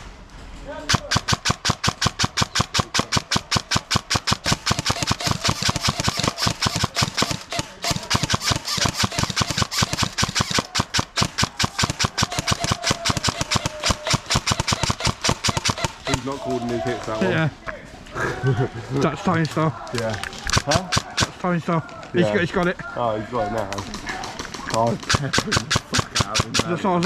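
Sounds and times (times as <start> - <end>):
airsoft gun firing full-auto: 0.9 - 16.3, 20.5 - 21.4, 24.2 - 27.0.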